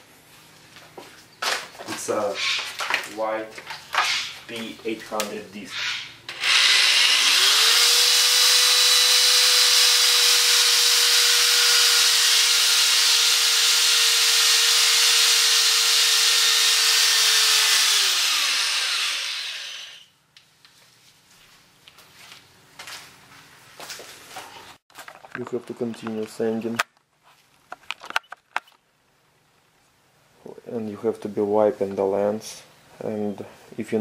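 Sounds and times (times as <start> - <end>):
power drill motor whine: 6.3 - 20.1.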